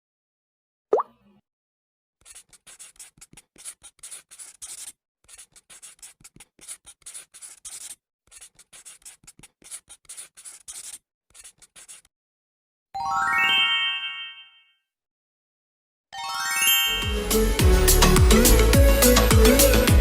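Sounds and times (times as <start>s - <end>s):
pen scratching on paper: 2.2s - 12.1s.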